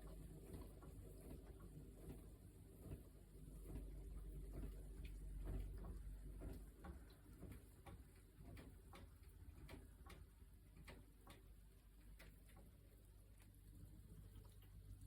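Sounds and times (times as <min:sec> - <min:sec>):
soft irregular ticks: 0:00.0 - 0:15.0
washing machine hum: 0:00.0 - 0:15.0.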